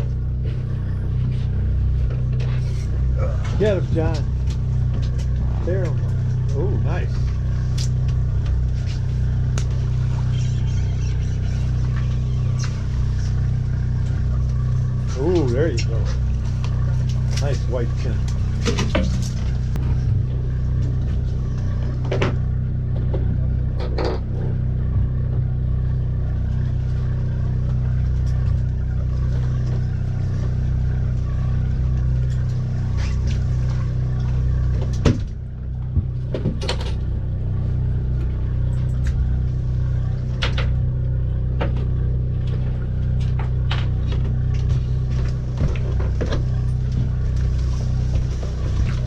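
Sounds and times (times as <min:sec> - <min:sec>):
boat engine droning: 0:00.0 - 0:49.0.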